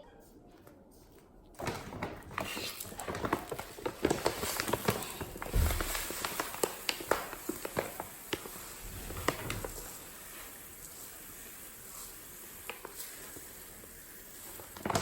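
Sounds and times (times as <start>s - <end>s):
cat scratching in litter: 2.3s - 10.7s.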